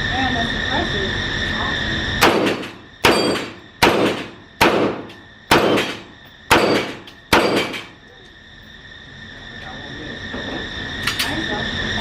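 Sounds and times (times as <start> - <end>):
gunshots with echo: 2.2 - 7.9.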